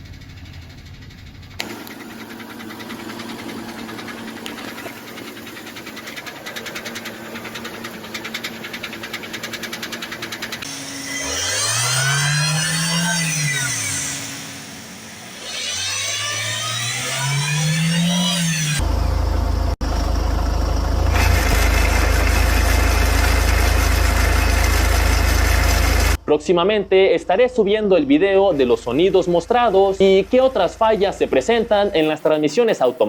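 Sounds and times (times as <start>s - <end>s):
transmission whine: 0.0s - 33.0s
steady hum: 1.2s - 19.6s
car engine revving: 1.5s - 19.0s
fast even ticking: 1.6s - 10.7s.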